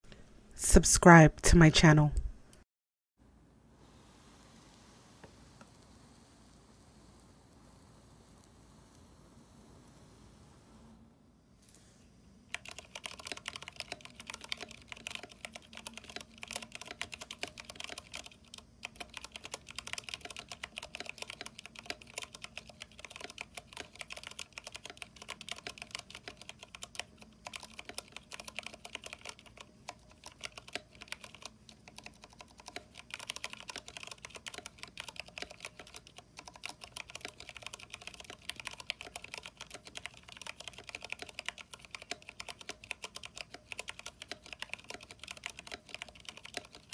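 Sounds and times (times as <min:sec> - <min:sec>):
fast typing on mechanical keyboard: 0:12.5 - 0:46.9.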